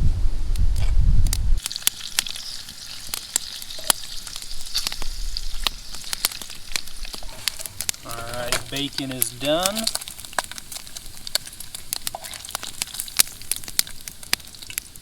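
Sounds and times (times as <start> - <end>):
wind rumbling on microphone: 0.0 - 1.6
bacon sizzling in a pan: 1.6 - 15.0.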